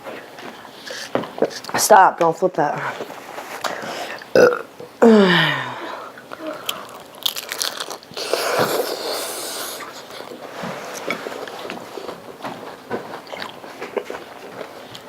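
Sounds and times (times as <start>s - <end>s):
chewing with wet crunching: 6.1s - 15.0s.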